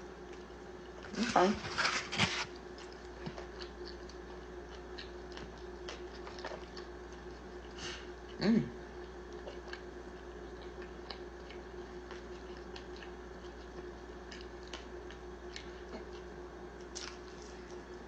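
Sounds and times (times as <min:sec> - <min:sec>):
background hum: 0:00.0 - 0:18.0
person chewing food: 0:00.2 - 0:18.0.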